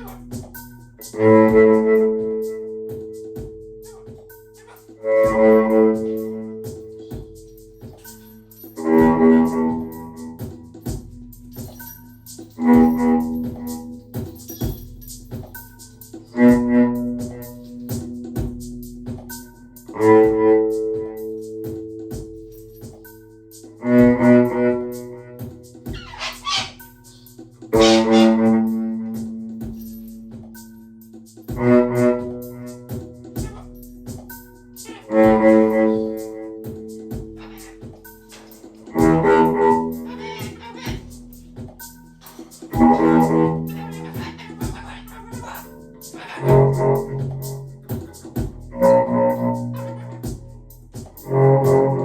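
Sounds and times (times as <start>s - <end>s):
instrumental music: 0.0s - 52.0s
light ticking beat: 0.0s - 52.0s
low held chords: 25.8s - 51.4s.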